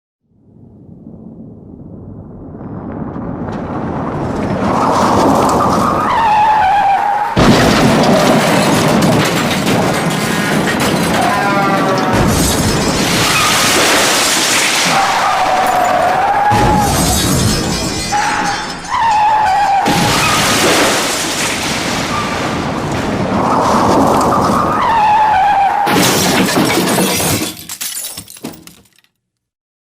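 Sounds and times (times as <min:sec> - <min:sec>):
loud car impact: 0:07.4 - 0:11.4
glass breaking: 0:07.4 - 0:24.7, 0:25.9 - 0:29.2
debris crunching and clattering: 0:07.4 - 0:24.9, 0:25.9 - 0:29.2
loud crash impact: 0:07.4 - 0:24.9.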